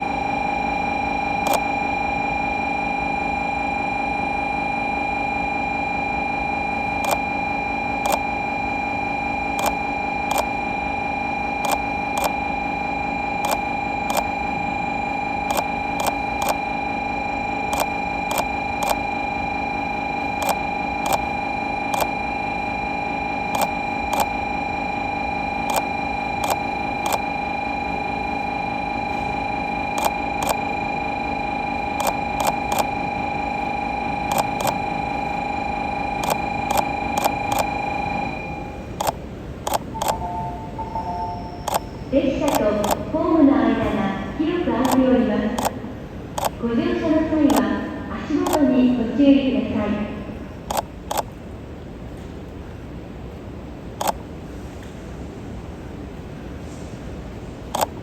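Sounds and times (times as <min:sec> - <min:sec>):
electrical whine: 0:00.0 - 0:58.0
sharp clicks: 0:01.4 - 0:01.7, 0:07.0 - 0:07.2, 0:08.0 - 0:08.2, 0:09.6 - 0:10.6, 0:11.6 - 0:12.4, 0:13.4 - 0:14.3, 0:15.4 - 0:16.7, 0:17.7 - 0:19.0, 0:20.4 - 0:21.3, 0:21.9 - 0:22.2, 0:23.5 - 0:24.4, 0:25.7 - 0:27.3, 0:30.0 - 0:30.7, 0:32.0 - 0:32.9, 0:34.3 - 0:34.8, 0:36.2 - 0:37.8, 0:39.0 - 0:40.3, 0:41.6 - 0:41.9, 0:42.5 - 0:43.0, 0:45.6 - 0:45.8, 0:46.4 - 0:46.6, 0:48.4 - 0:48.6, 0:50.7 - 0:51.4, 0:54.0 - 0:54.2, 0:57.7 - 0:58.0.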